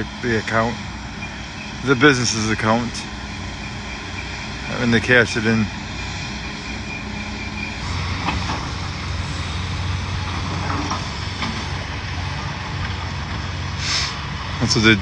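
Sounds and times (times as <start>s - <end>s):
large engine droning: 0.0s - 15.0s.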